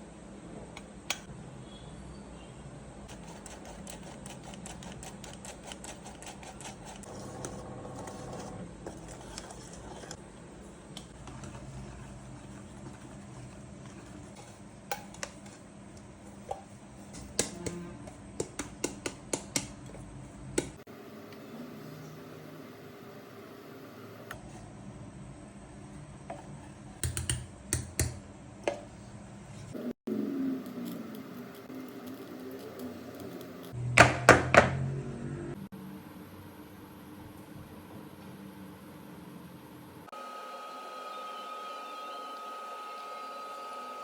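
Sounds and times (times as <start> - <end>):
sharp clicks and taps: 27.0 - 28.2.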